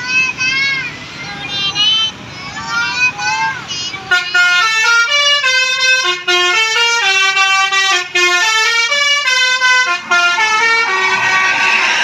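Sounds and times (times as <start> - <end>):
air horn playing a tune: 4.1 - 12.0.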